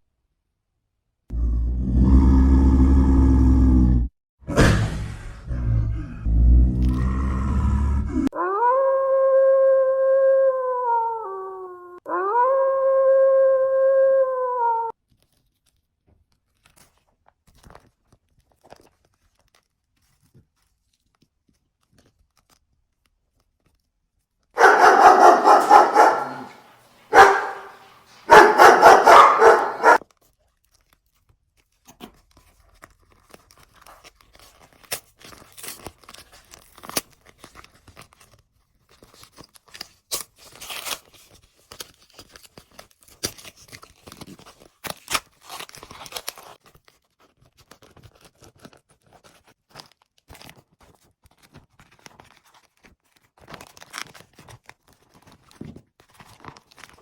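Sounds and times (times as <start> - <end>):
faint crackling and crunching: 15.1 - 23.8, 24.7 - 57.0
dog barking rapidly: 24.6 - 30.0.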